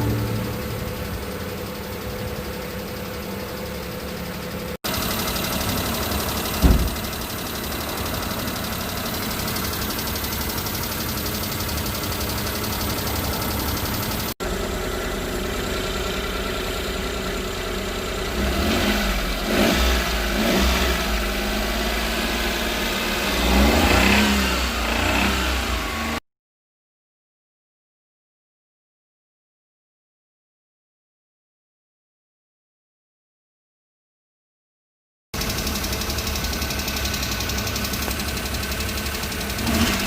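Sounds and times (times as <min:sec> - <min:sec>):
truck engine idling and revving: 0:00.0 - 0:26.2, 0:35.4 - 0:40.0.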